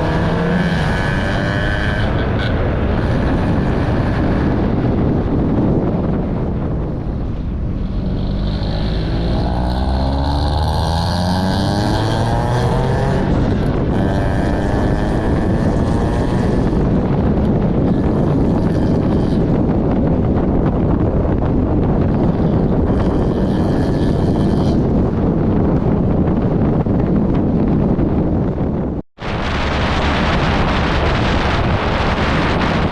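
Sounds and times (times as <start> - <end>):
wind buffeting microphone: 0.0 - 32.9
car engine accelerating: 7.8 - 19.5.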